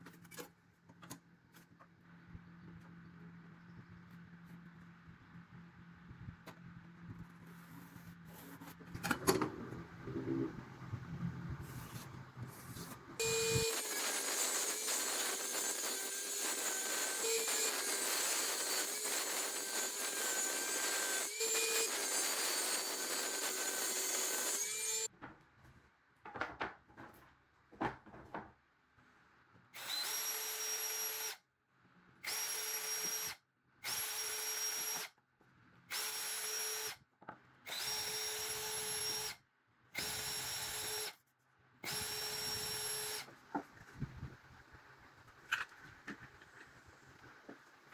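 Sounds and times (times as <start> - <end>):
power tool motor running: 13.2 - 25.1.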